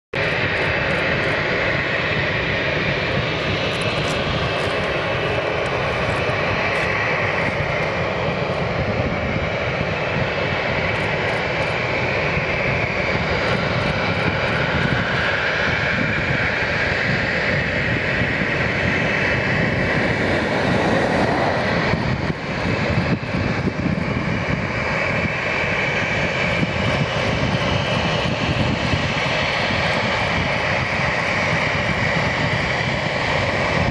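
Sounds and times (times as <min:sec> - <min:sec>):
jet engines whining: 0:00.2 - 0:33.9.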